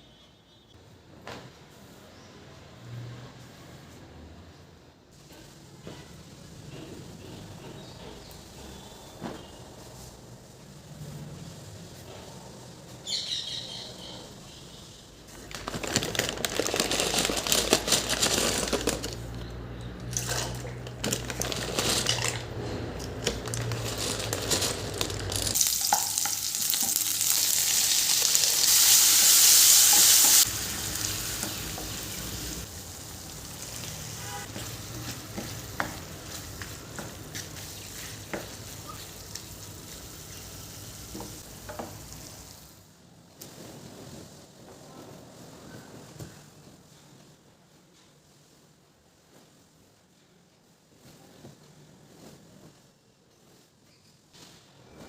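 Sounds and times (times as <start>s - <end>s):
food sizzling in a pan: 25.4s - 42.7s.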